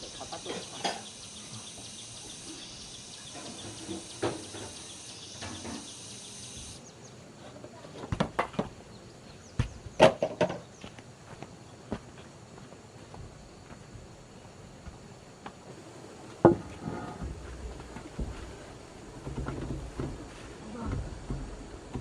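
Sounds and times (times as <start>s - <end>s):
high-pitched insect drone: 0.0s - 6.8s.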